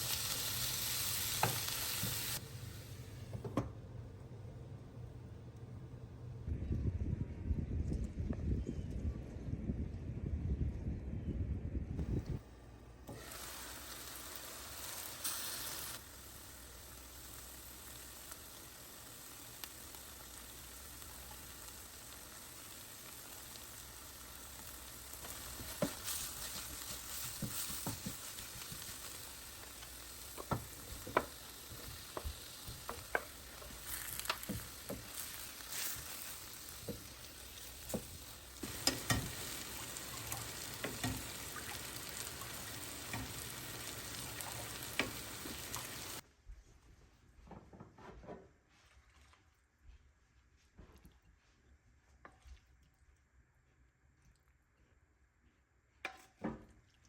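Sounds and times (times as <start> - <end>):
food sizzling in a pan: 0.0 - 3.2, 13.1 - 46.2.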